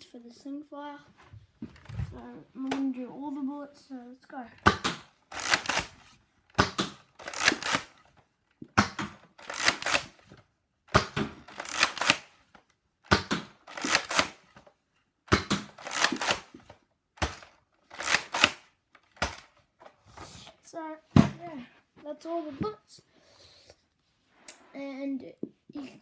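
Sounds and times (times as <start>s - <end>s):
plastic clacks of toy blaster: 4.6s - 8.1s, 8.7s - 14.7s, 15.3s - 19.6s
dart popping out: 15.3s - 16.3s.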